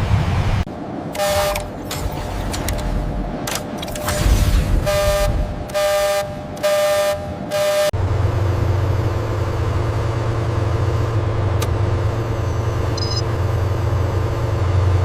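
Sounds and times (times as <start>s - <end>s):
low engine rumble: 0.0s - 15.0s
train horn blasts: 1.1s - 1.7s, 4.8s - 7.9s.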